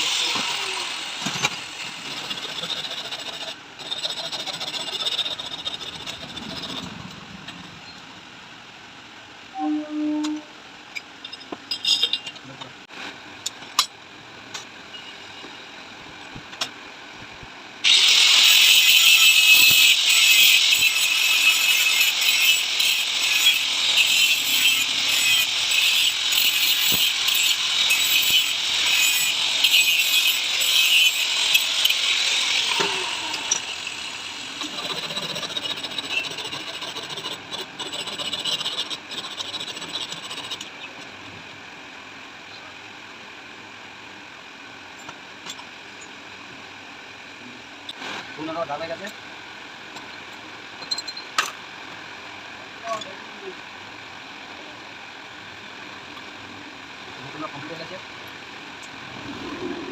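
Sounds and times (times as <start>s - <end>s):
electric welding crackling hiss: 17.9s - 35.1s.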